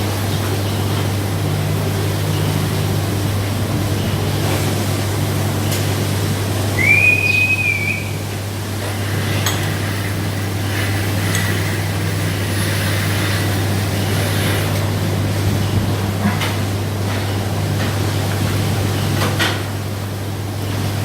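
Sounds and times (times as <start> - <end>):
milking machinery humming: 0.0 - 21.0
high-pitched whistle: 6.8 - 8.2.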